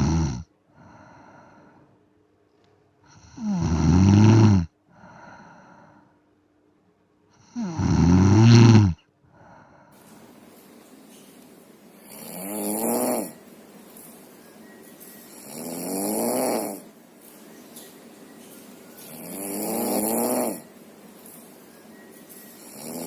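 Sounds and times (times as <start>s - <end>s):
person snoring: 0.0s - 1.8s, 3.1s - 6.0s, 7.4s - 10.0s, 12.0s - 14.1s, 15.2s - 17.0s, 18.6s - 21.4s, 22.4s - 23.0s
soft breath: 0.7s - 2.1s, 4.9s - 6.4s, 9.2s - 12.3s.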